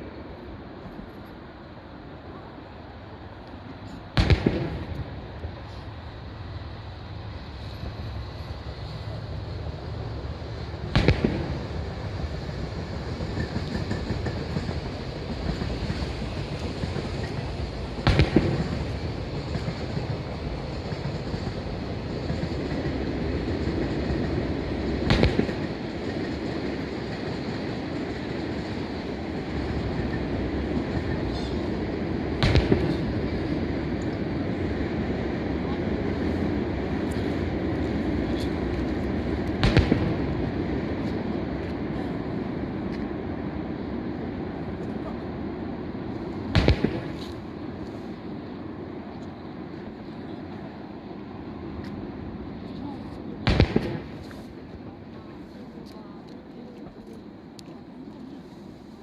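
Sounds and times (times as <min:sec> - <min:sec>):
firework shells bursting: 0:46.5 - 0:47.5.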